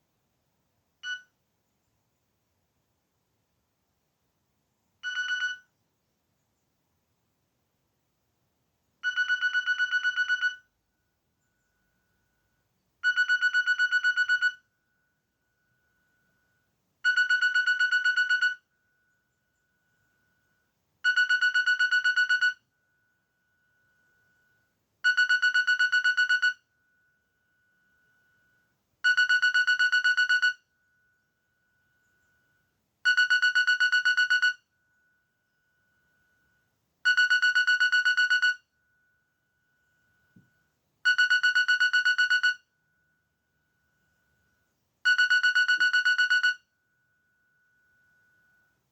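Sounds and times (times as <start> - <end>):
mobile phone ringtone pulsing: 9.0 - 10.7, 13.0 - 14.7, 17.0 - 18.7, 21.0 - 22.7, 25.0 - 26.7, 29.0 - 30.7, 33.1 - 34.7, 37.1 - 38.7, 41.1 - 42.7, 45.1 - 46.7.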